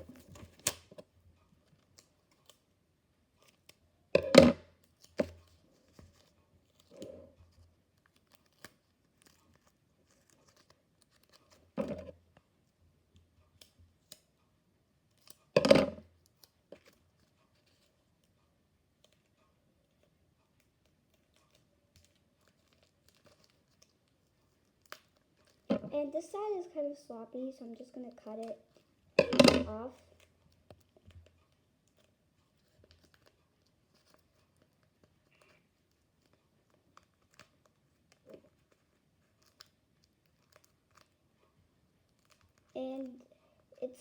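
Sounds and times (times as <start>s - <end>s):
paper crinkling: 4.8s - 12.4s, 16.2s - 18.3s, 19.0s - 26.7s, 29.9s - 43.2s.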